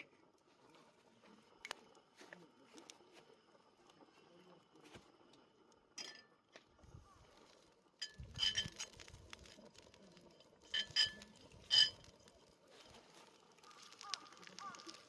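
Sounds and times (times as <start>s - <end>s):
kitchenware clinking: 8.0s - 9.0s, 10.6s - 12.2s.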